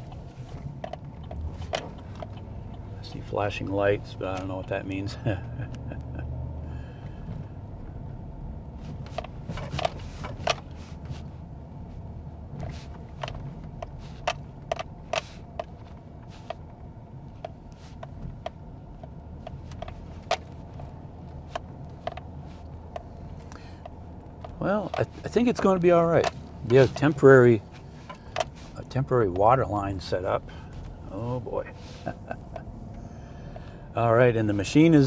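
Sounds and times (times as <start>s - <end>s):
sharp clicks and rattles: 0.0s - 4.8s, 12.9s - 29.5s
vehicle humming: 0.0s - 35.0s.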